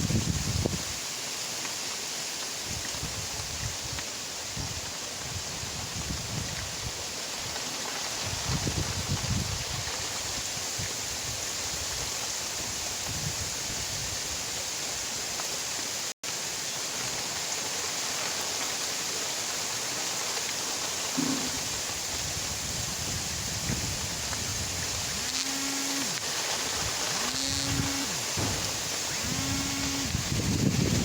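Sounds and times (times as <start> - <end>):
steady rain hiss: 0.0 - 31.0
livestock lowing: 21.2 - 21.8.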